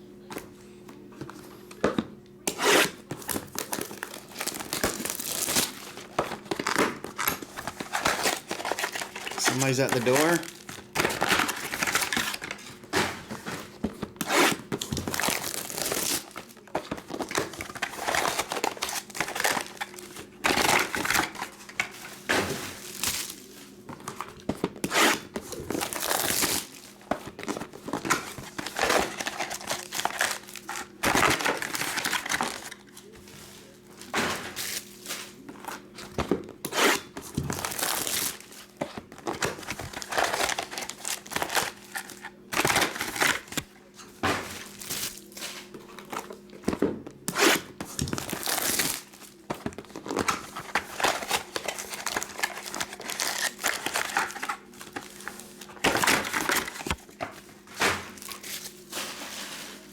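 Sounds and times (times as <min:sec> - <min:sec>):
card wrappers crinkling and tearing: 0:02.6 - 0:12.9, 0:14.0 - 0:21.9, 0:22.8 - 0:33.8, 0:36.8 - 0:43.7, 0:44.6 - 0:46.5, 0:47.8 - 0:57.2.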